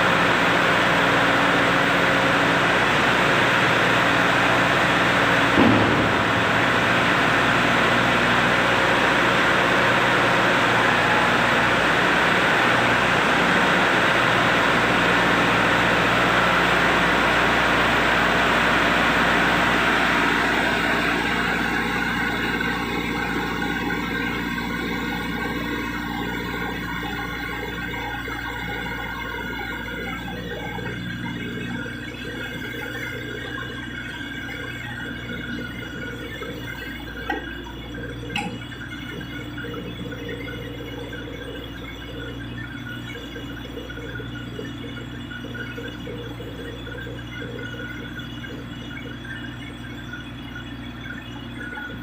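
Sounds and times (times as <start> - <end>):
loading machine engine running: 0.0 - 49.6
brief thump: 5.6 - 6.9.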